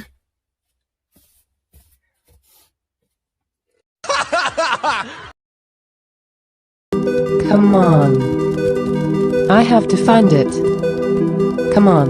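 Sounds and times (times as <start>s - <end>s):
person laughing: 4.0s - 5.3s.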